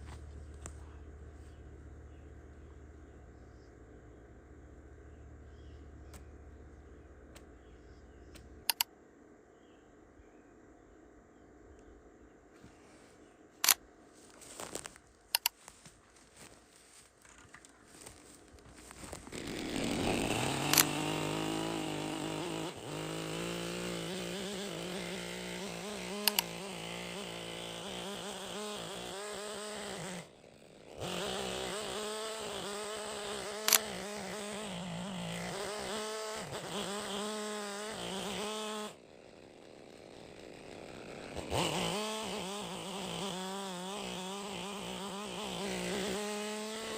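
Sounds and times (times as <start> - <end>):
sharp clicks: 8.3 - 8.9, 13.6 - 13.8, 14.8 - 15.6, 17.2 - 21.5, 26.0 - 26.8, 32.7 - 34.7
chainsaw cutting at high speed: 14.4 - 46.9.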